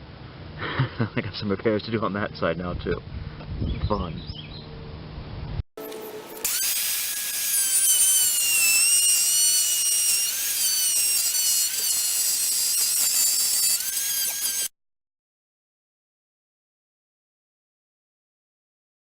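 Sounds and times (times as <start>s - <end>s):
wood router cutting wood: 5.8s - 14.7s.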